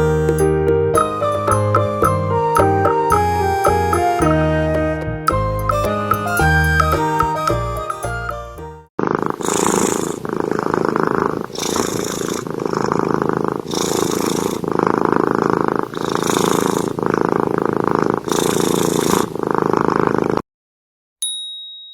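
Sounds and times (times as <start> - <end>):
kitten purring: 9.0 - 20.4.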